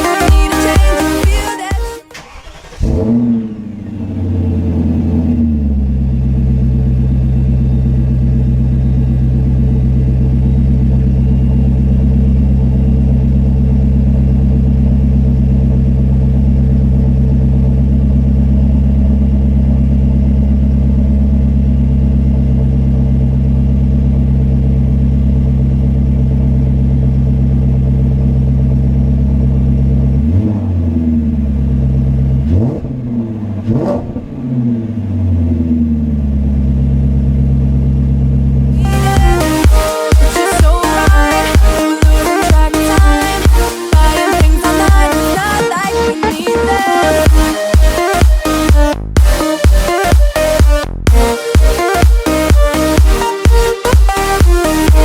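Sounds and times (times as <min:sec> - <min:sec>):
car engine idling: 0:00.0 - 0:55.0
engine revving: 0:02.1 - 0:19.8, 0:29.5 - 0:37.0, 0:38.5 - 0:55.0.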